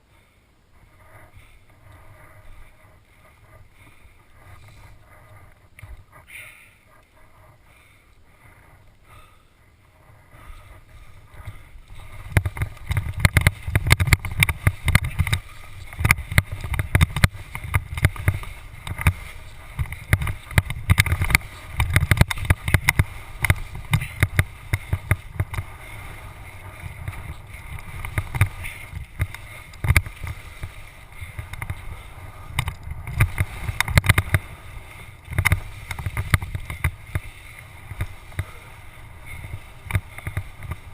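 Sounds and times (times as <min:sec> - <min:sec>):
helmet camera rattling in mount: 0:11.4 - 0:38.4.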